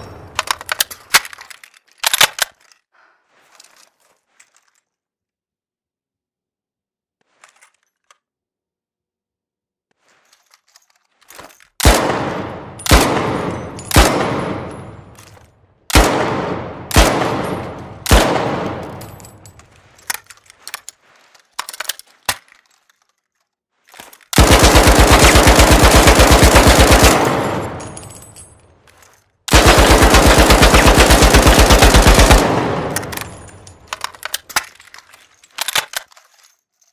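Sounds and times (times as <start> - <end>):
machine gun single shots: 11.8 - 14.7, 15.9 - 18.9, 29.5 - 33.1
automatic gunfire bursts: 15.9 - 18.8, 24.4 - 27.8, 29.5 - 33.2.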